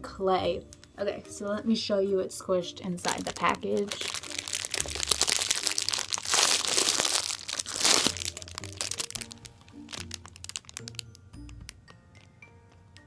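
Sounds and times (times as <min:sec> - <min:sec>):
light background music: 0:00.0 - 0:13.0
plastic packaging crinkling: 0:03.0 - 0:11.8.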